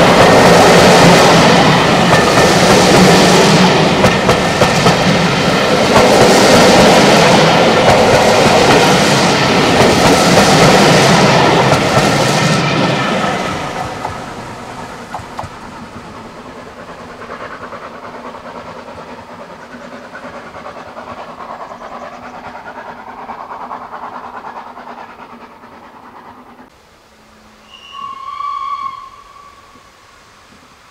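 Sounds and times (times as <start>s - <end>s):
steam train passing: 0.0s - 30.9s.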